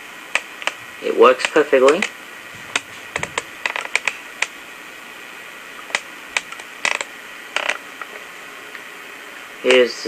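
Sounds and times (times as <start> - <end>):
tape hiss: 0.0 - 10.0
sharp clicks and taps: 1.4 - 4.6, 5.8 - 7.8.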